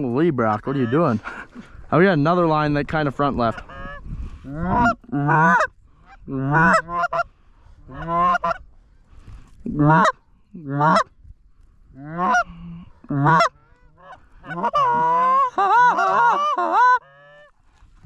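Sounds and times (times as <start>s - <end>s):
goose honking: 0.5s - 1.2s, 3.4s - 8.6s, 9.7s - 11.1s, 12.0s - 17.6s.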